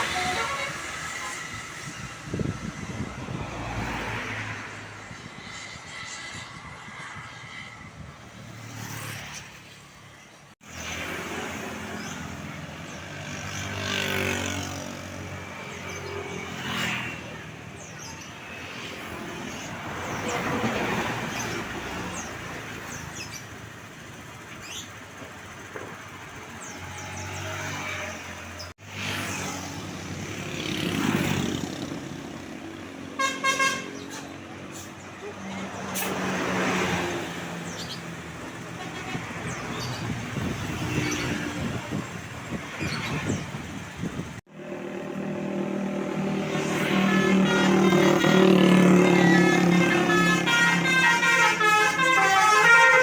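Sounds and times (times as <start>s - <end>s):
vehicle horn toots: 0.0s - 1.4s, 33.2s - 34.3s, 46.5s - 53.0s
vehicles passing: 0.0s - 53.0s.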